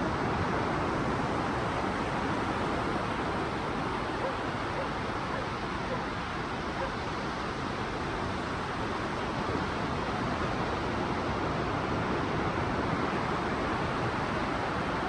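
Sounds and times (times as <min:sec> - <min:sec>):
wind: 0:00.0 - 0:15.0.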